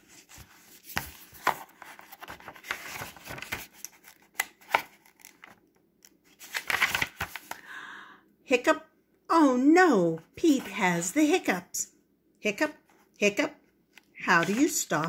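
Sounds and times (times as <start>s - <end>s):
paper pages rustling: 0.0s - 5.6s, 6.2s - 7.6s, 14.3s - 15.0s.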